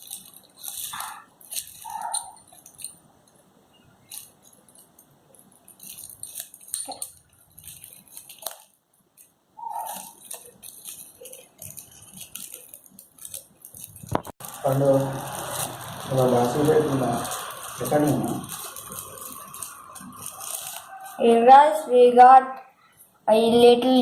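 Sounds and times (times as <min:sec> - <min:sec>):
plastic packaging rustling: 0:00.0 - 0:21.4
pitched squeaks: 0:09.6 - 0:12.7.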